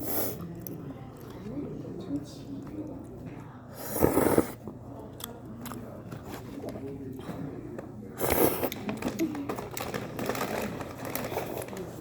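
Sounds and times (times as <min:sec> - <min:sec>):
noodles being slurped: 0:03.8 - 0:04.7, 0:08.2 - 0:08.8.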